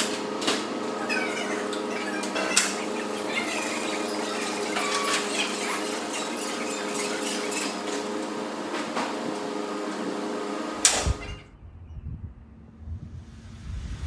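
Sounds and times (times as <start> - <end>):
mechanical hum: 0.0 - 14.0
low rumble: 11.1 - 14.0.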